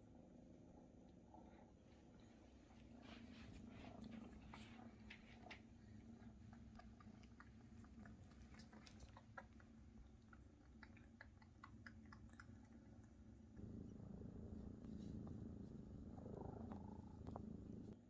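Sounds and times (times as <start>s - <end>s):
cat purring: 0.1s - 18.0s
kittens suckling wet clicks: 4.0s - 13.6s.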